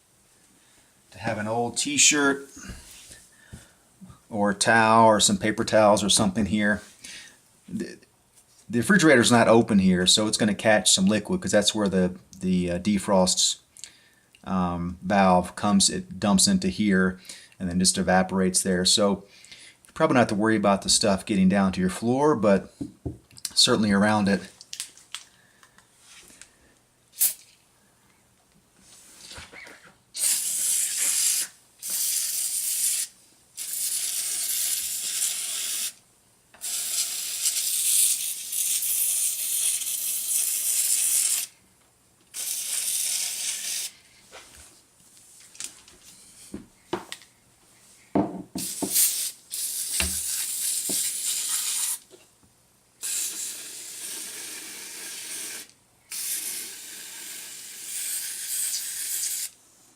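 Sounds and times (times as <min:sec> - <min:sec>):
aerosol can spraying: 0:27.2 - 0:27.5, 0:30.2 - 0:36.0, 0:36.6 - 0:41.5, 0:42.3 - 0:43.9, 0:48.6 - 0:52.1, 0:53.0 - 0:59.5.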